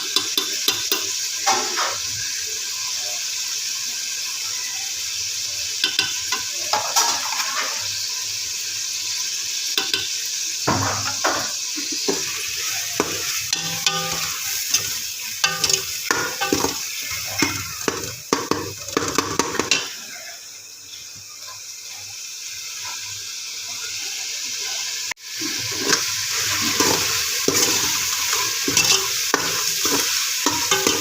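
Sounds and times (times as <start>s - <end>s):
okra sizzling in oil: 0.0s - 31.0s
spoon scraping and clinking pan: 12.0s - 20.0s, 25.8s - 31.0s.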